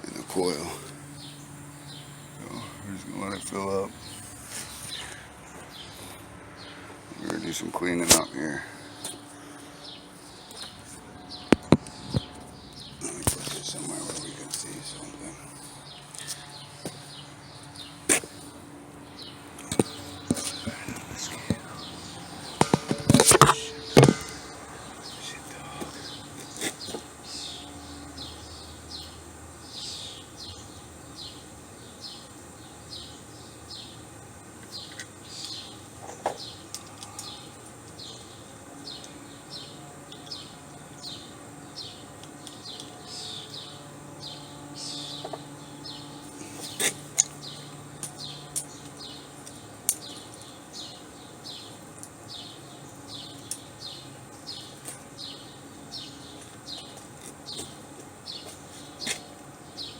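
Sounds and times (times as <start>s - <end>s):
faint low hum: 0.0s - 34.4s
bird chirping: 0.4s - 7.6s, 8.4s - 34.1s, 34.7s - 59.9s
sharp clicks or knocks: 22.6s - 24.4s.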